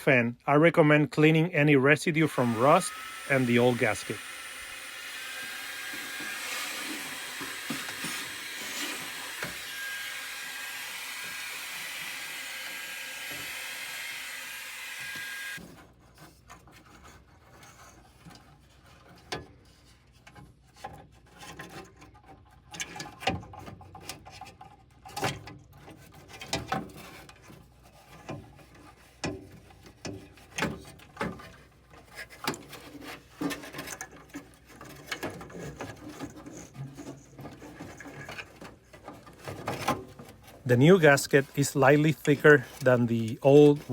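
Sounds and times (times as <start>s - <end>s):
small power tool whining: 2.2s - 15.6s
clicks and scrapes on sheet metal: 20.2s - 40.6s.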